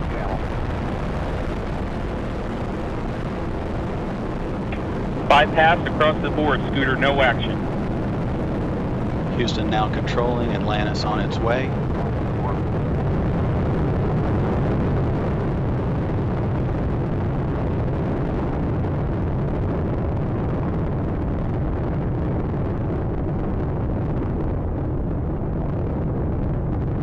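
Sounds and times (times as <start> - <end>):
loud rocket engine roar: 0.0 - 27.0.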